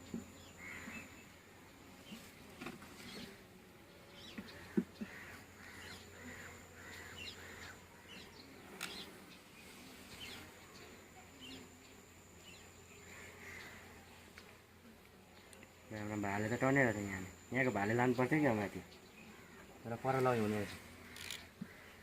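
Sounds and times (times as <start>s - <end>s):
small birds chirping: 0.0s - 22.0s
crows cawing: 0.6s - 1.2s, 4.5s - 7.8s, 13.0s - 14.0s, 19.3s - 19.7s, 21.0s - 22.0s.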